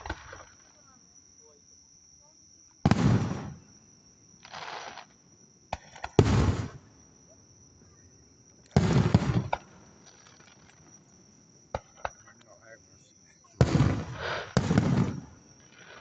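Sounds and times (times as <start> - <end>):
firework shells booming: 0.0 - 0.6, 2.8 - 3.8, 5.7 - 7.0, 8.7 - 12.6, 13.5 - 16.0.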